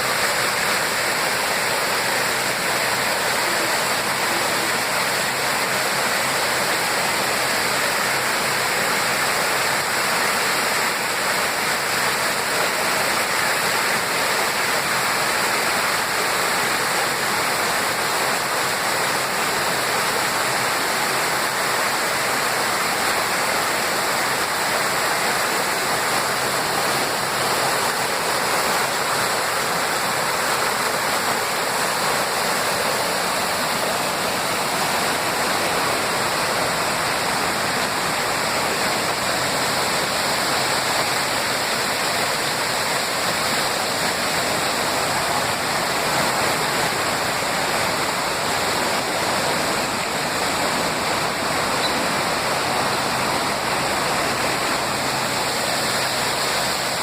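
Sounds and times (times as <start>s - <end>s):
waterfall splashing: 0.0s - 57.0s.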